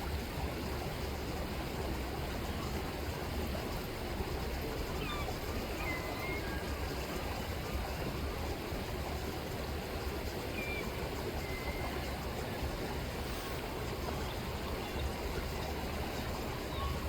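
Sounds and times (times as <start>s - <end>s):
river water flowing: 0.0s - 17.0s
faint gull calls: 16.6s - 17.0s.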